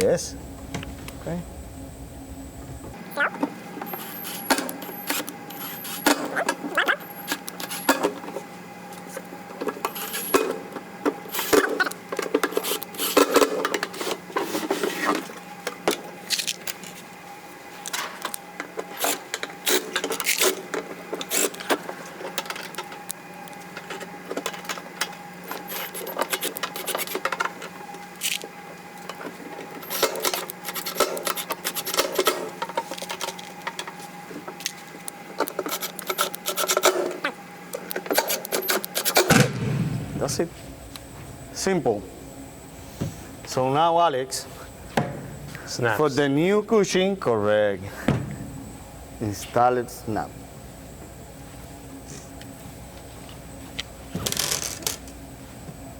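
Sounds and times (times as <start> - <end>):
faint steady hum: 0.0 - 10.6.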